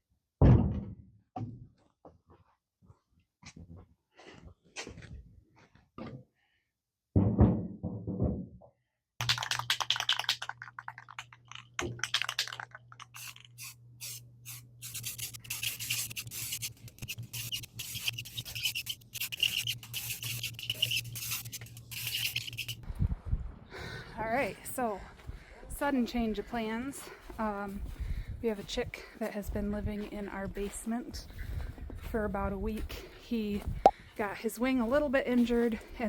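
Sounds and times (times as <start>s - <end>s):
rapid scraping strokes: 13.6s - 22.8s.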